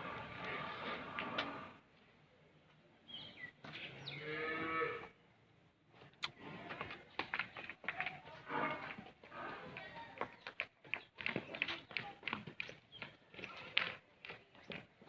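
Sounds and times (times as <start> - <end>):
cow mooing: 4.1 - 5.1.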